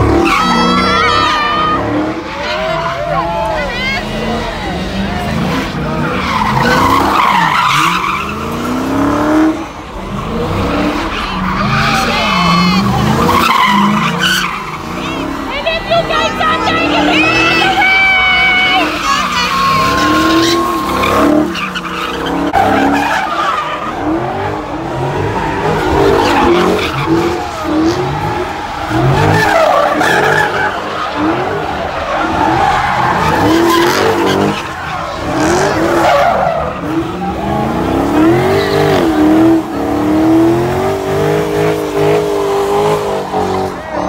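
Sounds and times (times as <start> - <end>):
car engine revving: 0.0 - 44.0
tyres squealing: 0.0 - 44.0.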